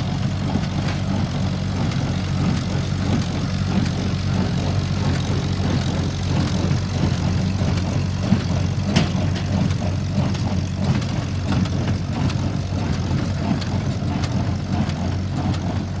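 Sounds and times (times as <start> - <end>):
tractor engine running: 0.0 - 16.0
baler clanking and clicking: 6.9 - 12.5.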